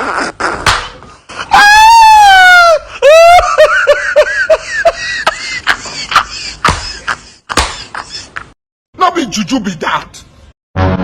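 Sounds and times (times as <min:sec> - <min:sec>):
person laughing: 0:02.7 - 0:08.6.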